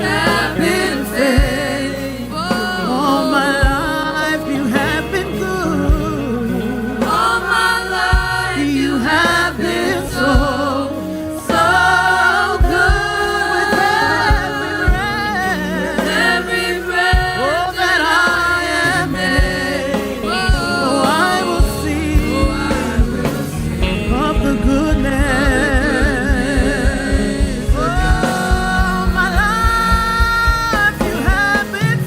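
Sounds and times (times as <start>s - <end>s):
voices singing over a band: 0.0s - 32.0s
bass drum hits: 19.0s - 31.7s.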